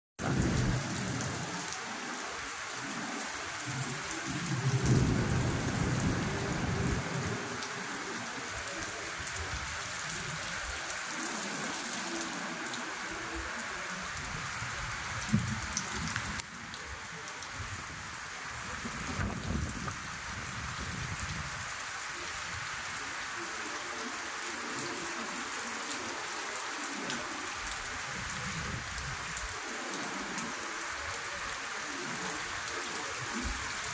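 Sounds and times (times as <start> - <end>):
thunder rumbling: 0.2 - 1.5, 4.4 - 7.4
heavy rain falling: 0.2 - 33.9.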